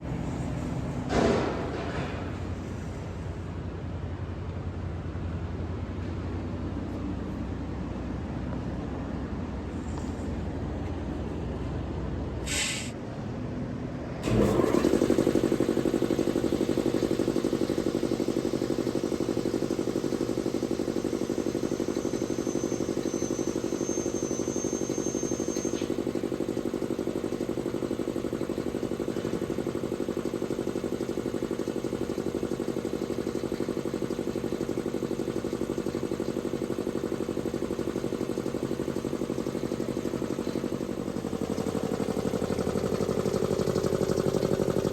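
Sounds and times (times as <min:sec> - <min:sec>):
short hiss: 0:12.4 - 0:13.0
electric air compressor running: 0:14.2 - 0:44.9.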